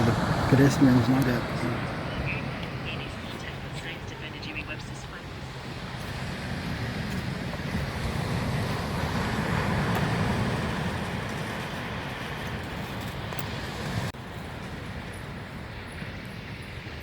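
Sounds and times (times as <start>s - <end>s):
vehicle passing by: 0.0s - 3.7s, 5.3s - 14.6s.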